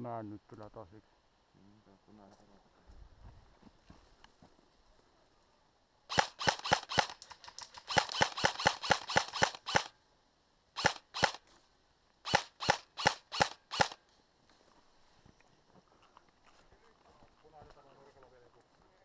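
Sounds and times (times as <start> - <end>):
airsoft gun shots: 6.1 - 9.9, 10.8 - 11.4, 12.3 - 14.0.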